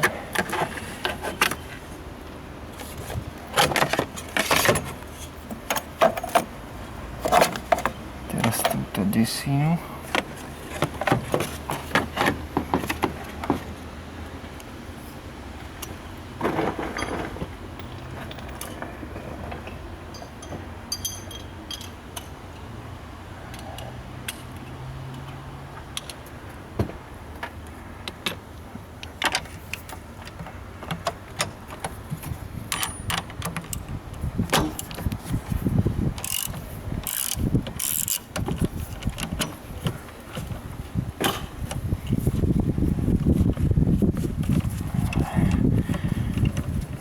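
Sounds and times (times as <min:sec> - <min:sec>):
ratchet wrench clicking: 0:36.2 - 0:38.3.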